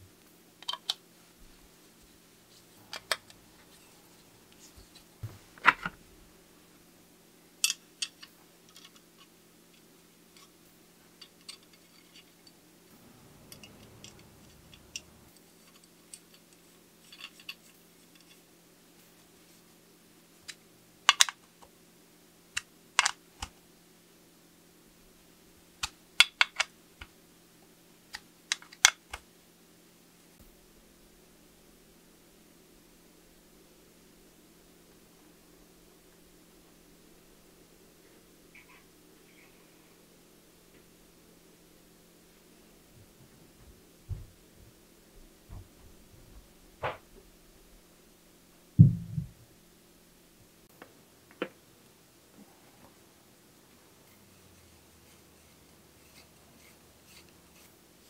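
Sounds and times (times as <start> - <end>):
faint steady hum: 0.0 - 58.0
metal tools clicking and knocking: 7.6 - 9.3, 11.2 - 12.6, 13.5 - 18.4.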